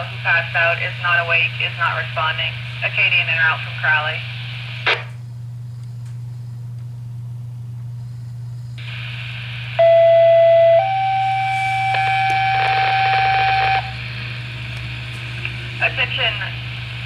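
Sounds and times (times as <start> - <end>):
radio hiss: 0.0 - 5.2, 8.8 - 17.0
low hum: 0.0 - 17.0
two-tone paging tones: 9.8 - 14.0.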